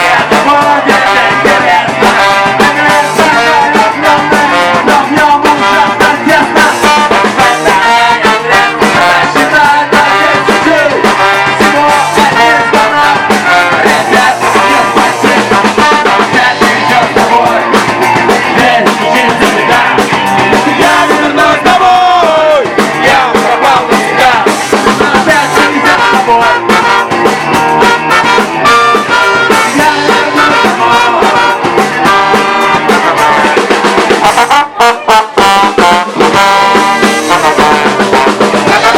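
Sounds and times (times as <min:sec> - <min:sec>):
band playing acoustic ska-rock: 0:00.0 - 0:38.9.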